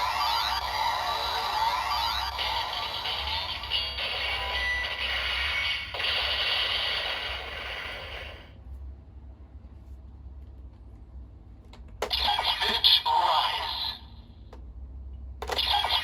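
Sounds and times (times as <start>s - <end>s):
toy electronic sound effect with music: 0.0s - 8.4s, 12.0s - 14.1s, 15.4s - 16.0s.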